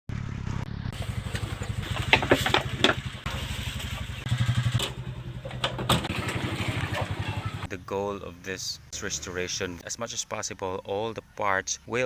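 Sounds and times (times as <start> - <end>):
small engine idling: 0.8 - 7.7
knocks and rattles: 1.1 - 7.7.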